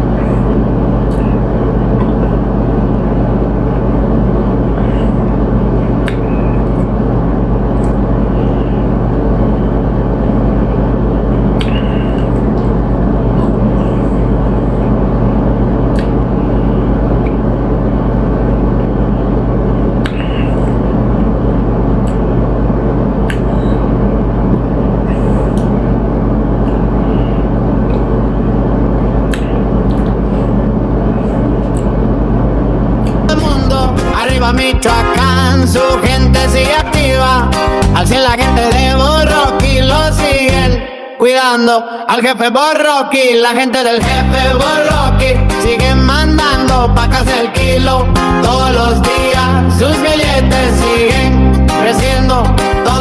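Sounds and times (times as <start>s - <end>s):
loud low rumble: 0.0s - 40.8s.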